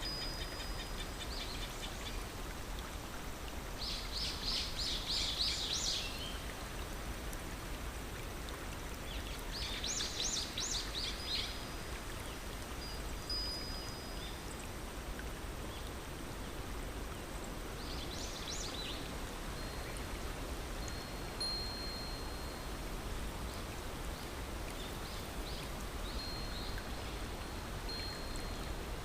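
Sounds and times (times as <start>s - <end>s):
songbird singing: 0.0s - 2.3s, 3.8s - 6.5s, 9.0s - 14.7s, 17.4s - 20.2s, 24.2s - 28.8s
stream rushing: 0.0s - 29.0s.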